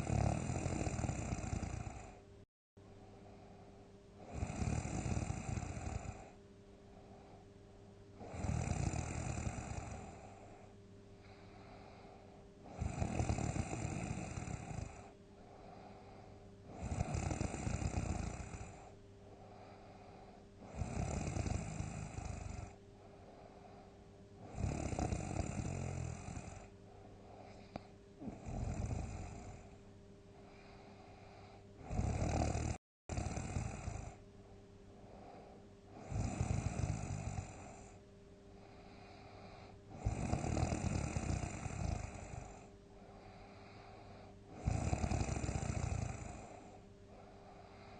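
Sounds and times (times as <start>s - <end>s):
person snoring loudly: 0.0s - 2.2s, 4.2s - 6.4s, 8.2s - 10.5s, 11.3s - 19.0s, 19.6s - 22.8s, 24.4s - 26.7s, 27.4s - 29.8s, 31.4s - 34.2s, 35.9s - 38.0s, 38.7s - 46.8s
quiet breathing: 0.0s - 47.9s.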